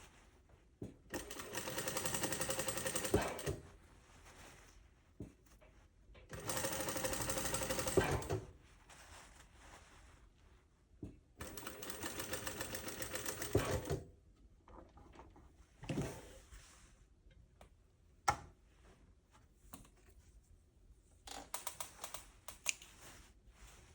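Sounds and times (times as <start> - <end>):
sewing machine stitching: 1.1 - 3.6, 6.3 - 8.5, 11.4 - 14.0.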